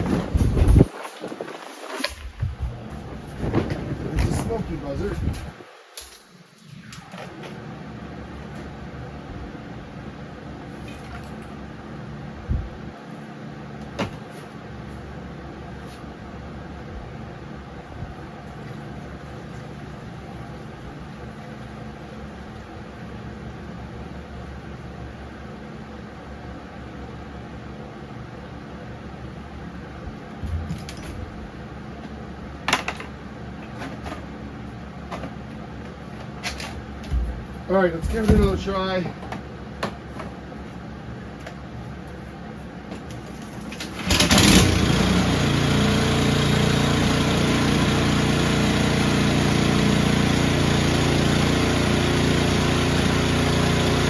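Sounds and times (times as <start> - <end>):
snowblower engine running: 43.8 - 54.0.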